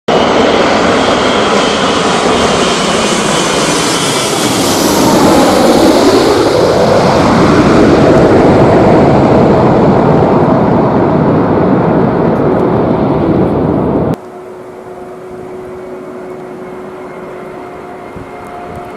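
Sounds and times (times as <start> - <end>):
jet airliner passing: 0.1 - 18.9.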